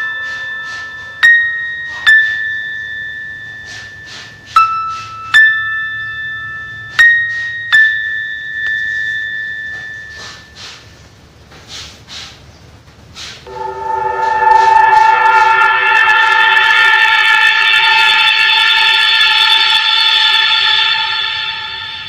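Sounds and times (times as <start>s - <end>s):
bell-like keyboard notes: 0.0s - 10.6s.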